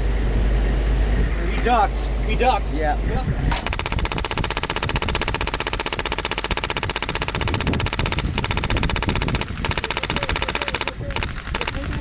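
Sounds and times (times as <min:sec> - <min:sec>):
airsoft gun firing bursts: 0:03.6 - 0:12.0.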